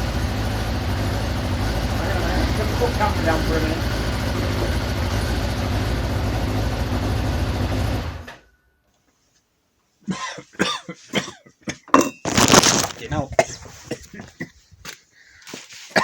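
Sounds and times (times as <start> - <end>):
engine running: 0.0 - 8.4.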